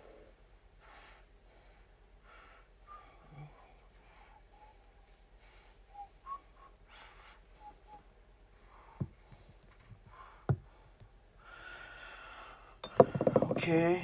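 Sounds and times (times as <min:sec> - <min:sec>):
soft whistled notes: 0:05.5 - 0:08.1.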